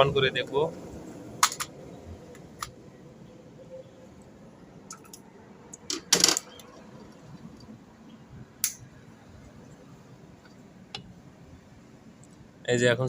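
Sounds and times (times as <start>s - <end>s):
metal parts clicking: 4.9s - 6.7s.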